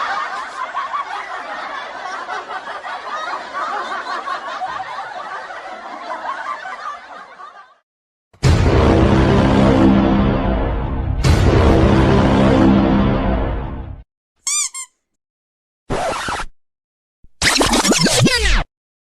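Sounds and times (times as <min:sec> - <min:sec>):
laughter: 0:00.0 - 0:07.8
loud music: 0:08.4 - 0:14.0.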